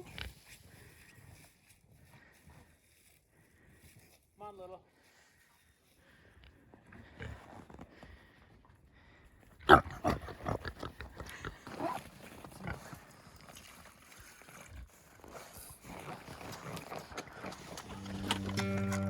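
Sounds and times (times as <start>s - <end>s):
farm animal noises: 17.4s - 19.0s.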